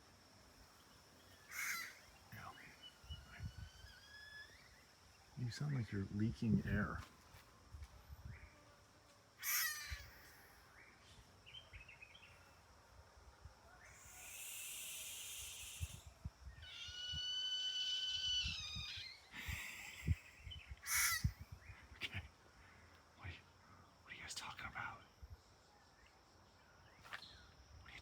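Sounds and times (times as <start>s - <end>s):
hyrax hissing call: 1.5s - 2.1s, 9.4s - 10.6s, 13.8s - 21.4s
hyraxes squealing: 1.5s - 4.8s, 9.4s - 10.6s, 13.8s - 21.4s.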